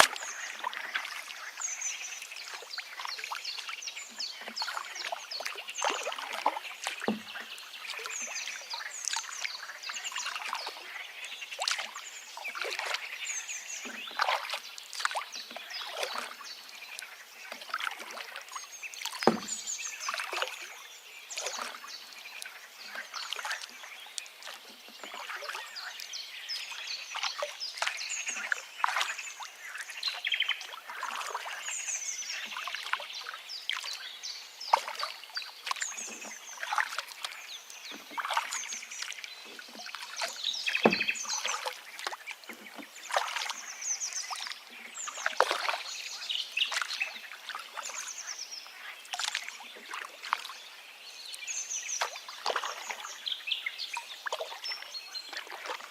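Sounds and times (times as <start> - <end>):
river water splashing: 0.0 - 55.9
birds chirping and trilling: 0.2 - 55.9.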